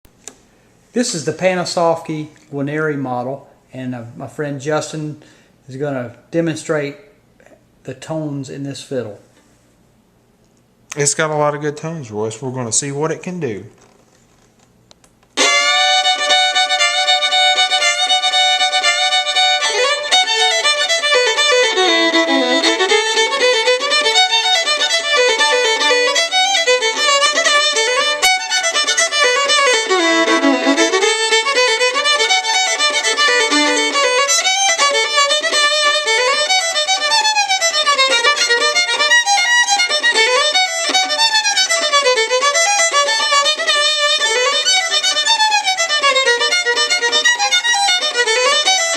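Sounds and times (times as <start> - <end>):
solo violin: 15.4 - 48.9.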